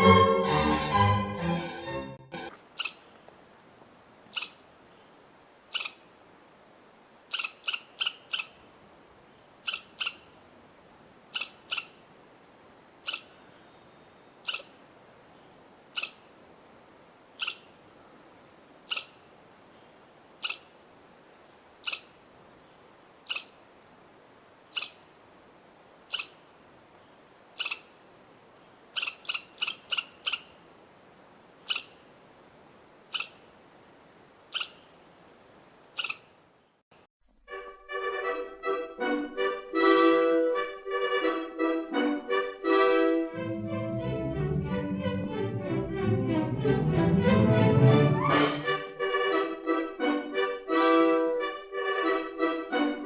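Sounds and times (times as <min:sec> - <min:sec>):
rodent chirping: 0:02.7 - 0:03.0, 0:03.6 - 0:04.6, 0:05.7 - 0:06.0, 0:07.3 - 0:08.6, 0:09.6 - 0:10.3, 0:11.3 - 0:12.3, 0:13.0 - 0:13.4, 0:14.4 - 0:14.8, 0:15.9 - 0:16.3, 0:17.4 - 0:18.1, 0:18.8 - 0:19.3, 0:20.4 - 0:20.8, 0:21.8 - 0:22.2, 0:23.2 - 0:23.6, 0:24.7 - 0:25.1, 0:26.1 - 0:26.5, 0:27.5 - 0:28.0, 0:28.9 - 0:30.6, 0:31.6 - 0:32.2, 0:33.0 - 0:33.5, 0:34.5 - 0:34.9, 0:35.9 - 0:36.3.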